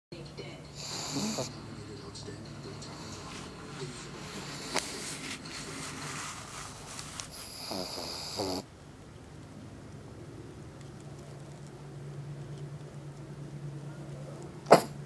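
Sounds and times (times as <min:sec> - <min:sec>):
dog snoring: 0:00.7 - 0:08.7, 0:14.6 - 0:15.0
dog snorting: 0:00.8 - 0:01.8, 0:02.5 - 0:08.6, 0:14.7 - 0:15.0.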